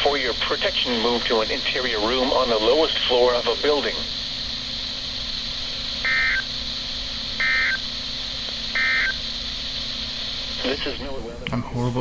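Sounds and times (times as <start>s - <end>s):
radio hiss: 0.0s - 12.0s
digital data tone bursts: 6.0s - 6.6s, 7.4s - 7.9s, 8.7s - 9.4s.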